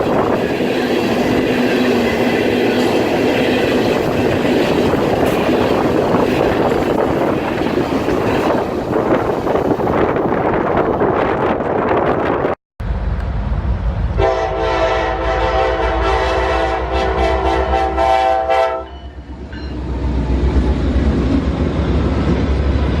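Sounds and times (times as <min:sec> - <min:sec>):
rushing rail noise: 0:00.0 - 0:23.0
train rumble: 0:00.0 - 0:23.0
locomotive air horn: 0:14.2 - 0:19.2.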